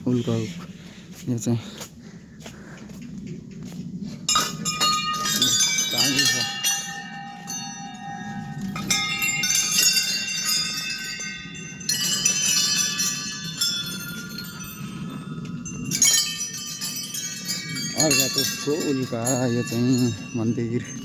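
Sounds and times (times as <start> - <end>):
small metal bells ringing: 4.2 - 21.0.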